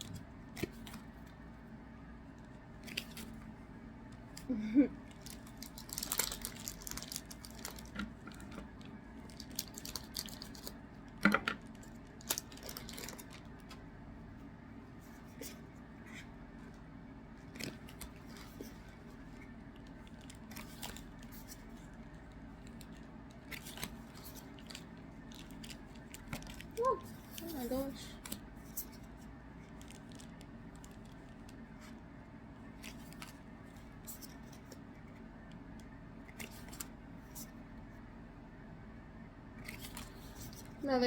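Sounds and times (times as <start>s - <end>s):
foil packs crinkling: 5.1s - 8.6s, 9.2s - 10.8s, 11.6s - 13.7s.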